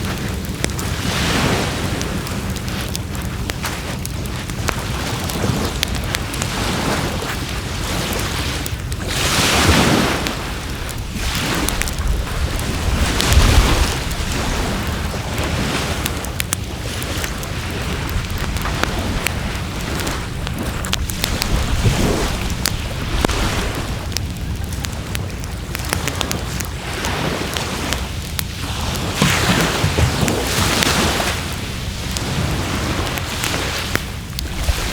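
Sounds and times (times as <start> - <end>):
wood fire crackling: 0.0 - 34.9
steady rushing noise: 9.6 - 34.9
low rumble: 17.8 - 25.8.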